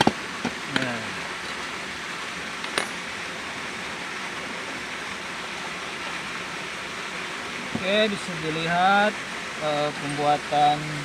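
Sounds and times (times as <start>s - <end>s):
flowing water: 0.0s - 11.0s
sharp metallic clink: 2.7s - 3.1s.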